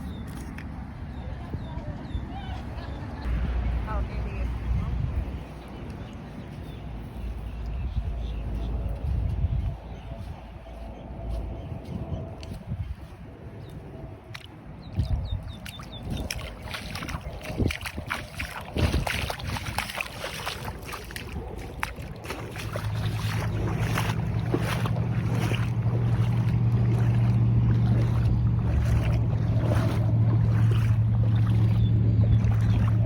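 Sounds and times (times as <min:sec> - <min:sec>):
wind crackling on microphone: 0:00.0 - 0:33.0
motor droning: 0:21.2 - 0:33.0.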